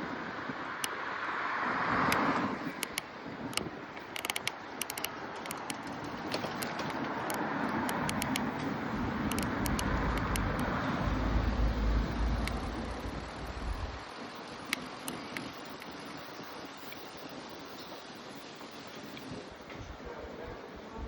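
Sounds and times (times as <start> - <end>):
wind and road rush: 0.0 - 21.0
wind buffeting on microphone: 0.0 - 21.0
sharp clicks: 2.1 - 14.0.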